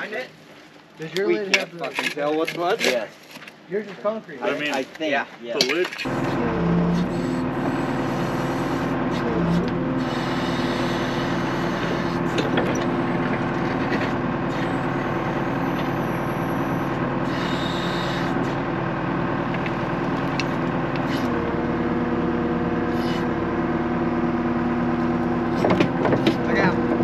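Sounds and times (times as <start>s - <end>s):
backhoe diesel engine running: 6.0s - 27.0s.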